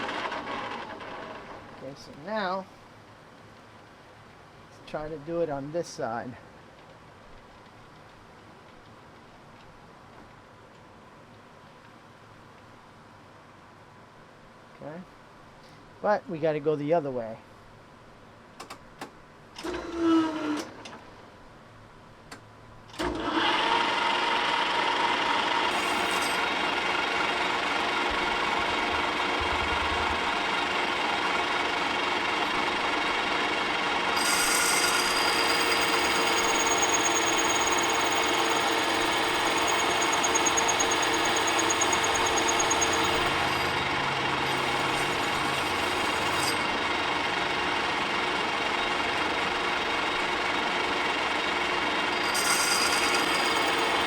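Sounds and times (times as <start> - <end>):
metal lathe cutting steel: 25.1 - 54.0
high whine: 25.7 - 47.4.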